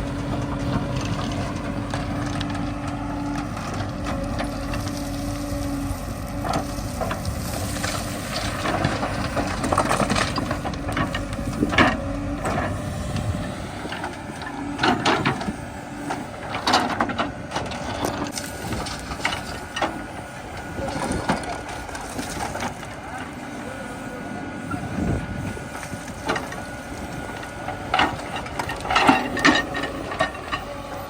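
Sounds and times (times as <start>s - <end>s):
diesel engine running: 0.0s - 31.0s
metallic clanks of digger bucket: 27.4s - 31.0s.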